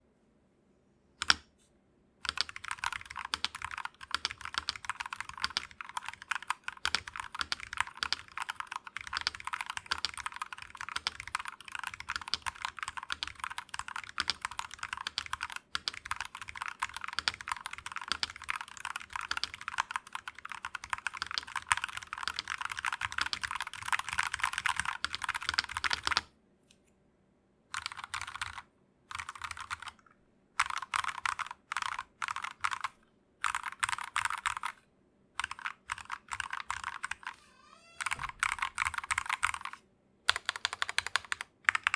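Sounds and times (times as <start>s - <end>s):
mechanical keyboard typing: 1.2s - 1.5s, 2.2s - 26.3s, 27.8s - 30.0s, 30.6s - 34.8s, 35.4s - 41.9s.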